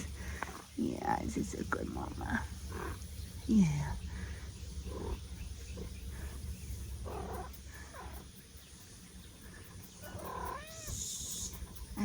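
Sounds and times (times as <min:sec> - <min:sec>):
cats meowing faintly: 0:10.0 - 0:11.6.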